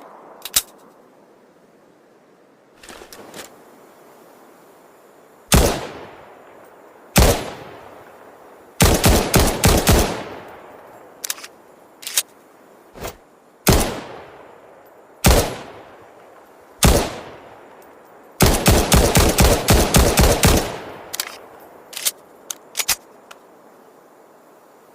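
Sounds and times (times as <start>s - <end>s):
pistol shots echoing: 5.5s - 6.2s, 7.2s - 7.8s, 15.2s - 15.9s, 16.8s - 17.6s
sharp clicks: 11.2s - 12.4s, 21.1s - 23.4s.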